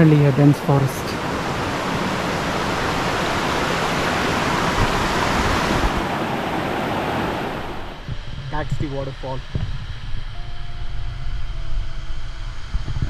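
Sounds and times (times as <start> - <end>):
water cascading over rocks: 0.0 - 7.8.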